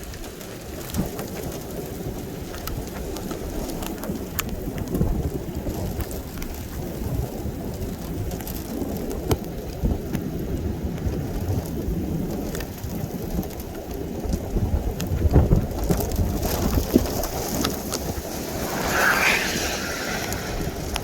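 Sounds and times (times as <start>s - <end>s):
hiss: 17.8s - 21.0s.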